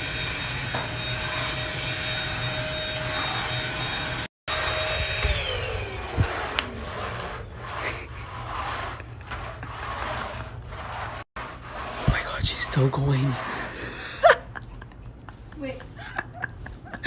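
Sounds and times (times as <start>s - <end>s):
electric motor whine: 0.0s - 8.0s.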